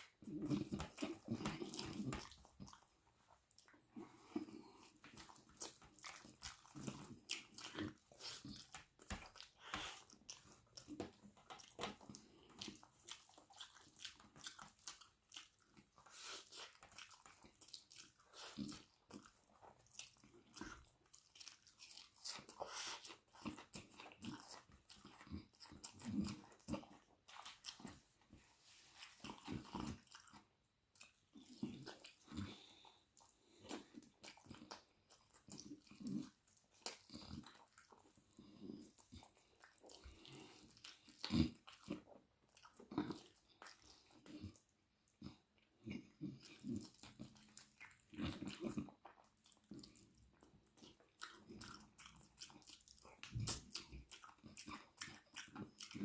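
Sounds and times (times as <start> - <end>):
chewing with crunchy bites: 0.0 - 56.0
wet mouth clicks: 50.8 - 56.0.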